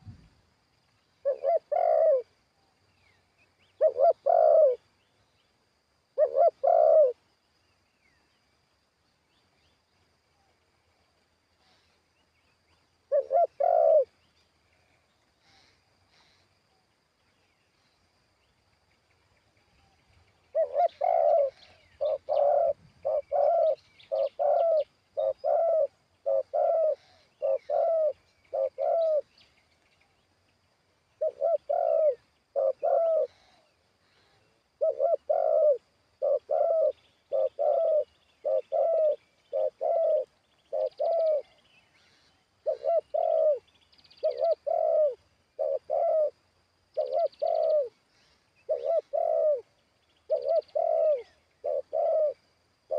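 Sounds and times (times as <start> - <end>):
small birds chirping: 0.0 - 52.9
dove cooing: 1.2 - 2.4, 3.6 - 4.9, 6.2 - 7.2, 13.0 - 14.3, 20.5 - 29.4, 31.2 - 52.9.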